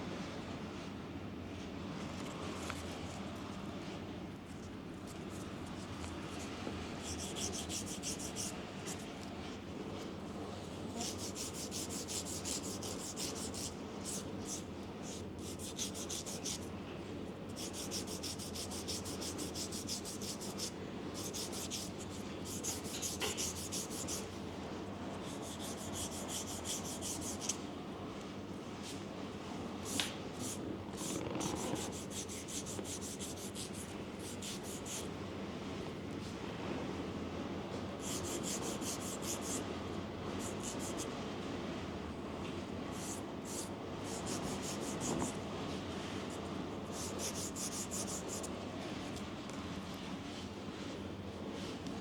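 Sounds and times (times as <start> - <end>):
fast rubbing strokes: 6.3 - 9.1, 11.0 - 16.6, 17.5 - 24.4, 25.1 - 27.6, 29.9 - 35.1, 38.0 - 39.6, 40.4 - 41.0, 43.0 - 45.4, 46.4 - 48.5.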